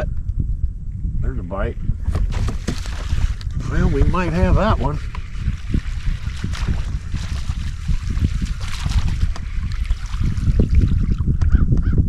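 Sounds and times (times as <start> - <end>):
wind buffeting microphone: 0.0 - 12.0
water noise: 2.0 - 11.7.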